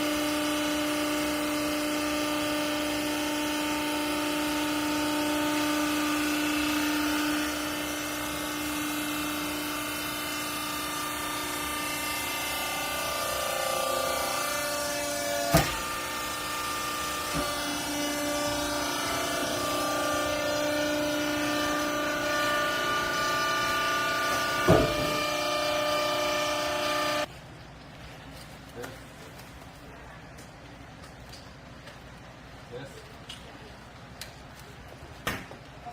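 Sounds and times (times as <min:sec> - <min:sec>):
hydraulic pump whining: 0:00.0 - 0:27.3
sharp knock: 0:24.6 - 0:25.2.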